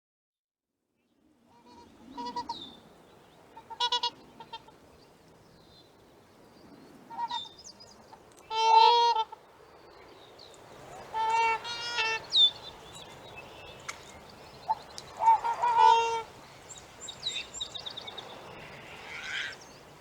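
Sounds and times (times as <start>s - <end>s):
swan honking: 1.5s - 2.7s, 3.5s - 4.8s, 7.1s - 7.5s, 8.5s - 9.4s, 11.0s - 12.7s, 14.7s - 16.4s, 18.6s - 19.6s.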